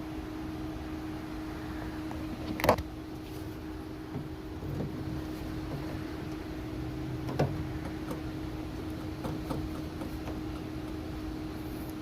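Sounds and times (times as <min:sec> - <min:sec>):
steady low hum: 0:00.0 - 0:12.0
clicks and taps on plastic trim: 0:08.9 - 0:11.0.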